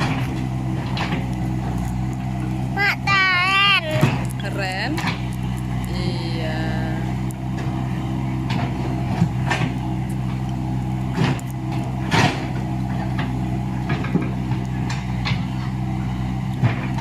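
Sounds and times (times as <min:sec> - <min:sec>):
machine knocks and clanks: 0:00.0 - 0:01.9, 0:08.4 - 0:15.7
excavator diesel engine: 0:00.0 - 0:17.0.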